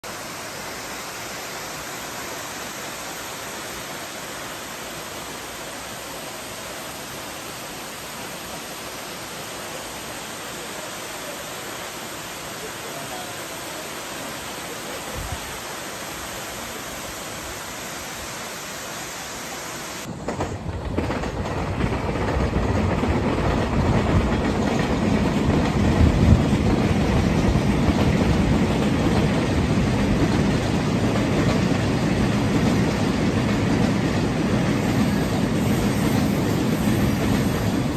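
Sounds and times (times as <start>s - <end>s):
waterfall roaring: 0.0s - 20.2s
train rumbling: 0.0s - 37.9s.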